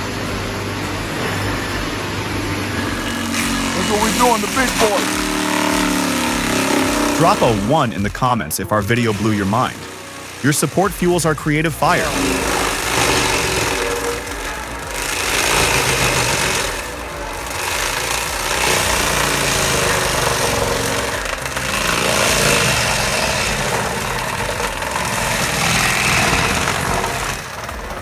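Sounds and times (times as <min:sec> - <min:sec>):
harsh mechanical noise: 0:00.0 - 0:28.0
heavy machinery engine running: 0:00.0 - 0:28.0.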